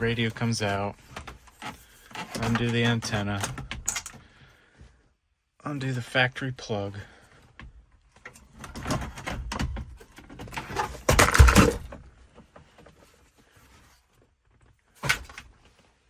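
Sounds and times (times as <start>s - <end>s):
radio wiring rattling and clicking: 0.0s - 4.2s.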